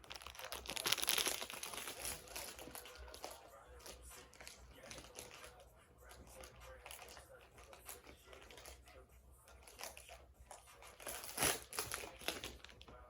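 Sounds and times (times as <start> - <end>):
cellophane wrapper crinkling: 0.0 - 5.6, 10.9 - 12.9.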